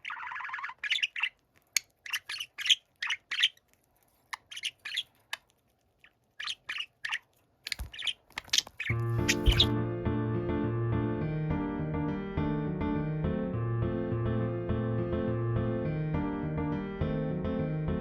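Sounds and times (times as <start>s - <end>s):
budgerigar chirping and warbling: 0.0s - 3.7s, 4.3s - 5.5s, 6.4s - 9.7s
soft piano music: 8.9s - 18.0s.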